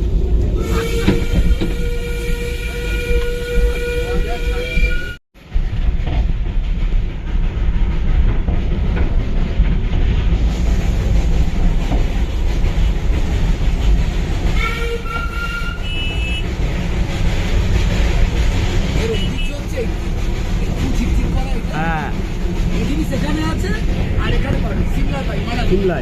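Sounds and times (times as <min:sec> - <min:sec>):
train rumbling on track: 0:00.0 - 0:26.0
train horn tooting: 0:00.6 - 0:05.2, 0:14.6 - 0:16.5, 0:19.0 - 0:19.7.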